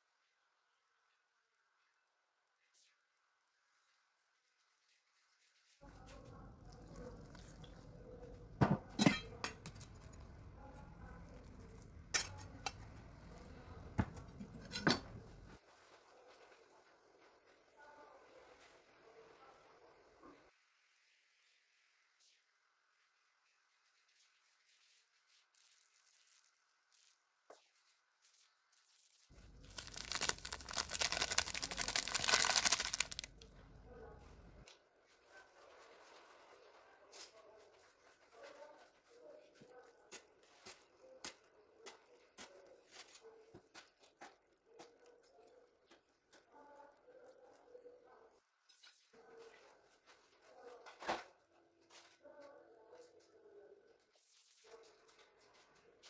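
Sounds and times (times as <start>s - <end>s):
utensils clinking on cookware: 8.6s - 9.8s
crinkling and rustling: 24.8s - 45.1s.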